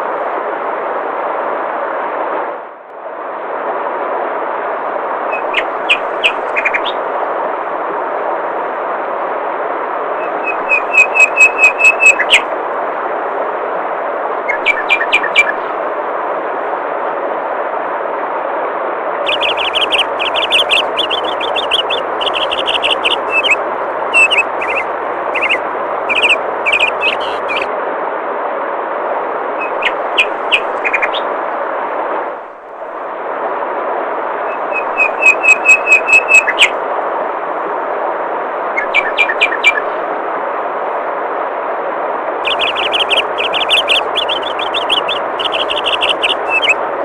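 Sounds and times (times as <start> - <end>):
songbirds chirping: 5.3 - 7.0, 14.5 - 15.6, 19.3 - 27.7, 29.6 - 31.3, 42.5 - 46.8
flowing water rushing: 19.3 - 27.7, 42.4 - 47.0.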